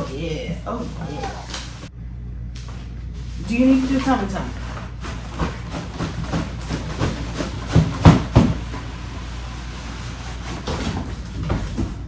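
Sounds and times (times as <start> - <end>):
steady low hum: 0.0 - 12.0
dull knocks and thumps: 4.6 - 12.0.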